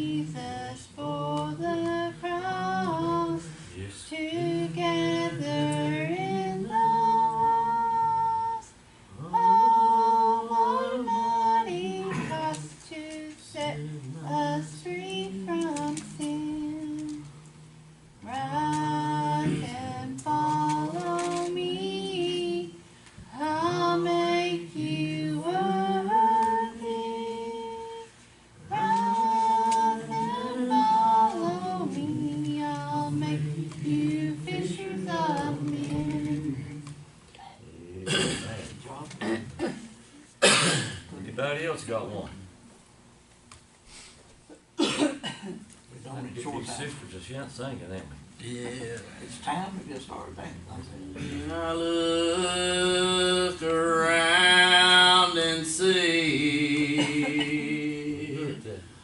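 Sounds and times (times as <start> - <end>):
woman singing gospel: 0.0 - 37.2, 51.1 - 58.6.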